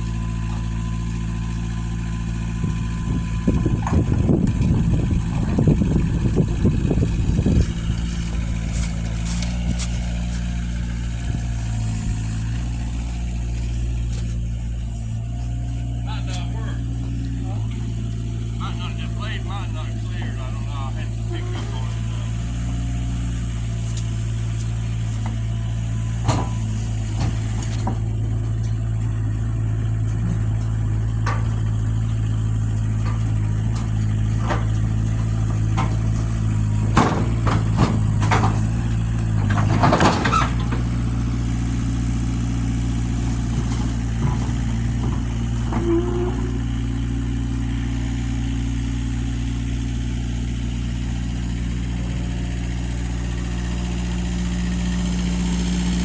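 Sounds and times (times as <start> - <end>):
engine idling: 0.0 - 56.0
knocks and clanks: 2.6 - 18.3, 21.3 - 49.9.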